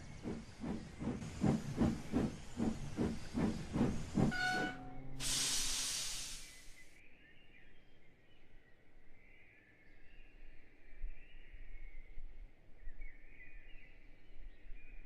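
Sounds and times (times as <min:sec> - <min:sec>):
steam locomotive chuffing: 0:00.0 - 0:06.6
steam hissing: 0:00.0 - 0:06.8
locomotive whistle: 0:04.2 - 0:05.8.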